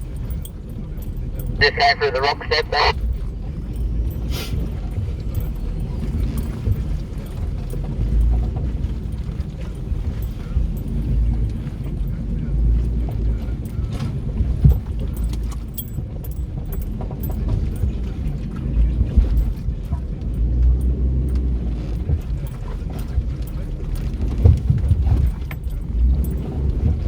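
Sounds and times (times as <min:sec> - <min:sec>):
engine and tyre rumble: 0:00.0 - 0:27.0
loose gear rattling: 0:12.8 - 0:18.5.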